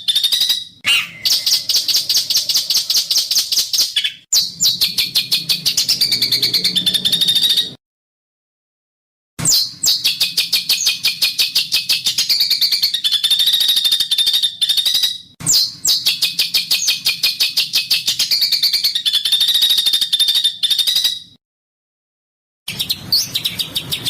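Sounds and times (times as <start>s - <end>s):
songbird harsh rattling notes: 0.1s - 7.8s.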